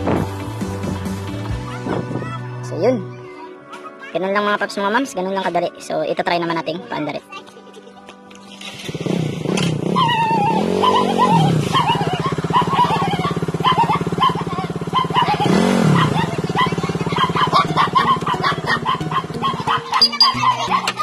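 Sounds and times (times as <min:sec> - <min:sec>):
motorcycle engine revving: 0:08.4 - 0:21.0.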